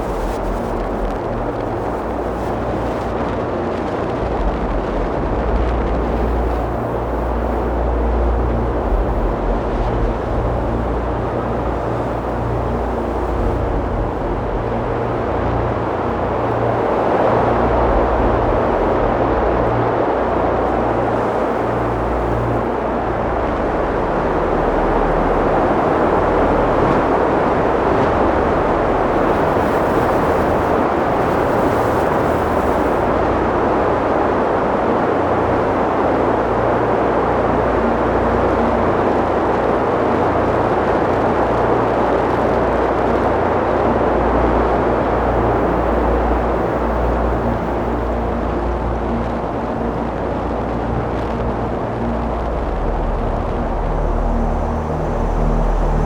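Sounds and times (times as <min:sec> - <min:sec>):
wind buffeting microphone: 0:00.0 - 0:36.9
strong wind blowing: 0:00.0 - 0:56.0.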